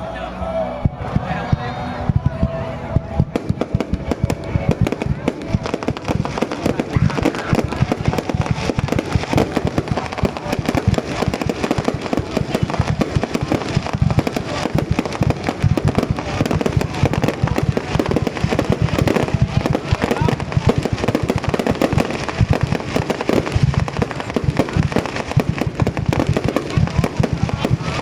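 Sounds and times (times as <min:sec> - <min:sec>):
fireworks banging and crackling: 0:00.8 - 0:28.0.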